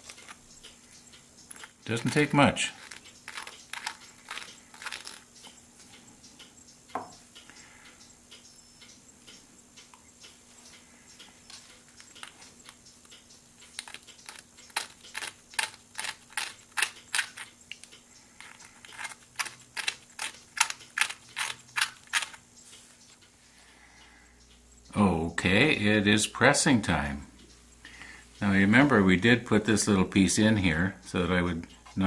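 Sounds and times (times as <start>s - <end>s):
sharp mechanical clicks: 0.0s - 5.6s, 7.4s - 23.3s
faint ticks: 0.0s - 15.8s, 22.5s - 25.7s, 27.3s - 29.0s
steady low hum: 0.0s - 32.0s.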